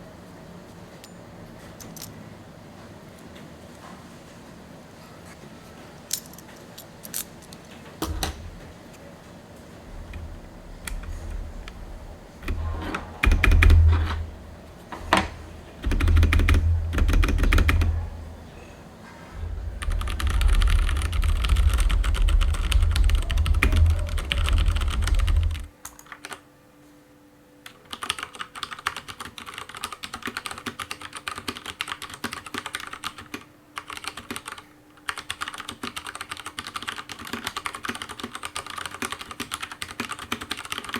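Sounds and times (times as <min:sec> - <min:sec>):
low rumble: 0:08.0 - 0:25.7
mechanical keyboard typing: 0:12.4 - 0:14.4, 0:15.1 - 0:18.3, 0:19.9 - 0:26.4, 0:27.7 - 0:40.9.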